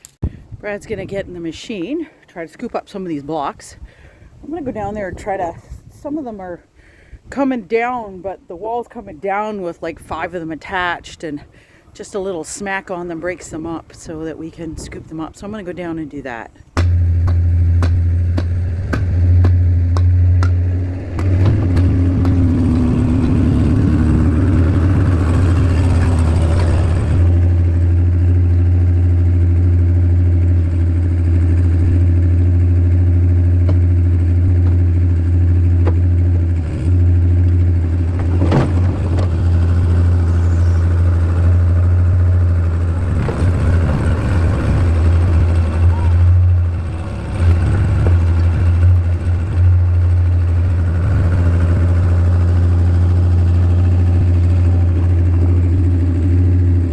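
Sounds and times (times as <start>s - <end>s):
sharp knock: 16.8s - 22.4s
skid steer engine running: 16.8s - 56.9s.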